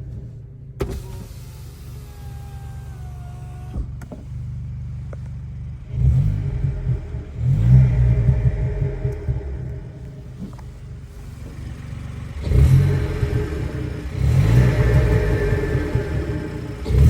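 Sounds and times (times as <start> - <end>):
car engine revving: 0.0 - 17.0
turbo whoosh: 12.4 - 17.0.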